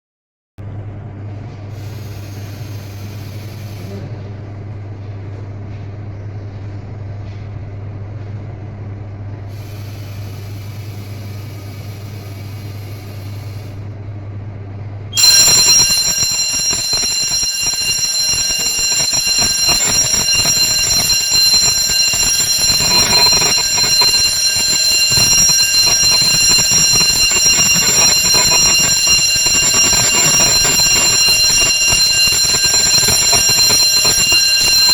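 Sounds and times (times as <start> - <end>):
high-pitched fire alarm: 15.2 - 34.9.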